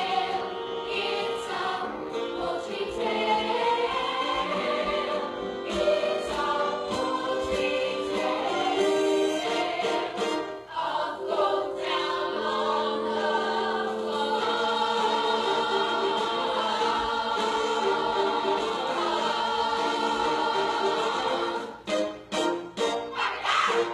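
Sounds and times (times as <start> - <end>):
choir singing: 0.0 - 23.9
musical accompaniment: 0.0 - 23.9.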